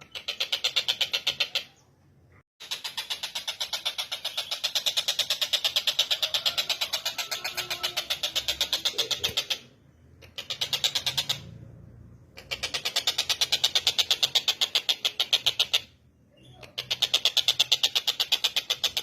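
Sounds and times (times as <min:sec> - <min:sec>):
kingfisher rattling calls: 0:00.0 - 0:01.8, 0:02.6 - 0:11.5, 0:12.4 - 0:15.9.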